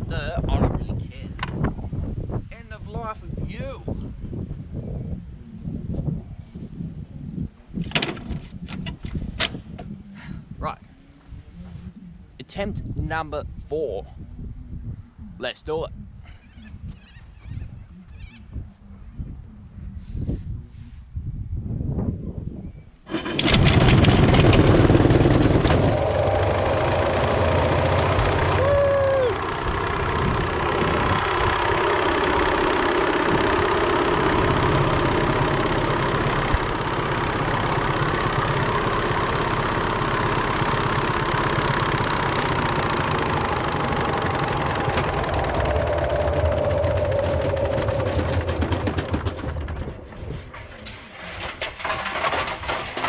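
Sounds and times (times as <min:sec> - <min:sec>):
washing machine loud mechanical din: 0:23.1 - 0:50.7.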